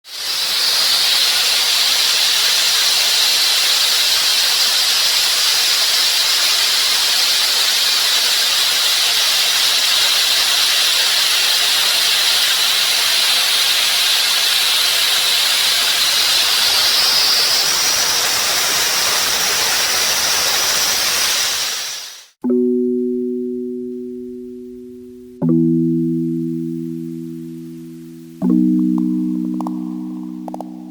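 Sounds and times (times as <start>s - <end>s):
loud steady hiss: 0.0s - 22.4s.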